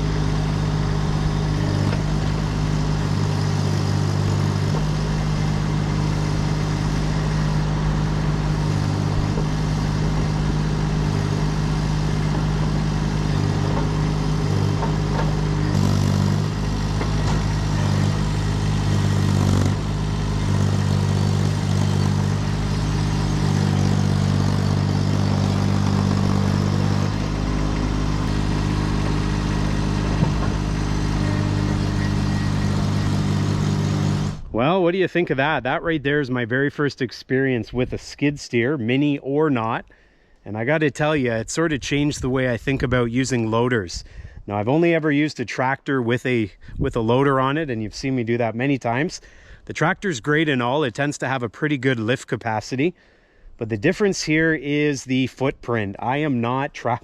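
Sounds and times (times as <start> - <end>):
diesel engine running: 0.0 - 34.6.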